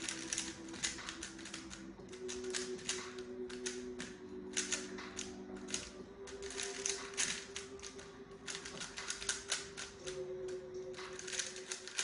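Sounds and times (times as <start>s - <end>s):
plastic puzzle cube clicking turns: 0.0s - 12.0s
soft background music: 0.0s - 12.0s.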